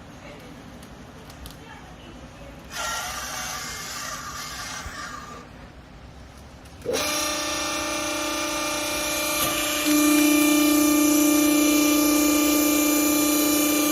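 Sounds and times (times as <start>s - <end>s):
electric motor and pump whine: 2.6s - 13.9s.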